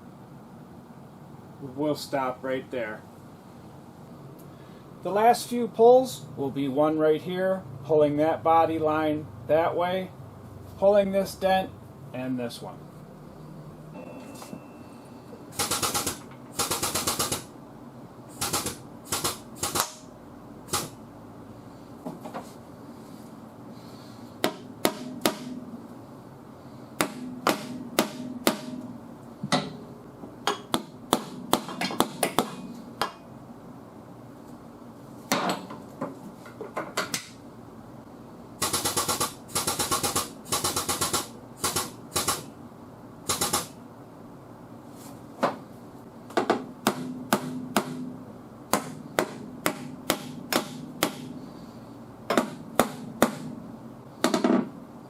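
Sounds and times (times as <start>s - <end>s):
rapid rattling bursts: 15.5s - 17.5s.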